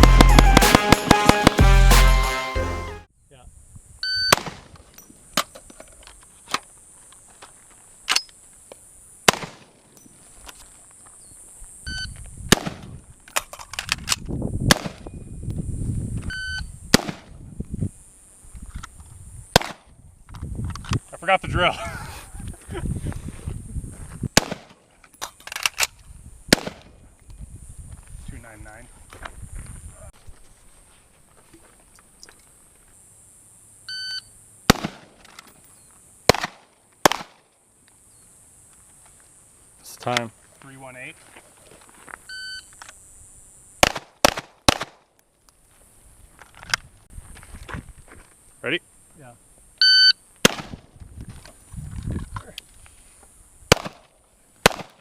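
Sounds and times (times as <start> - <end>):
gunshots: 0.0 - 2.4, 34.7 - 35.2, 36.3 - 37.4, 43.8 - 45.0, 53.7 - 54.0, 54.6 - 55.0.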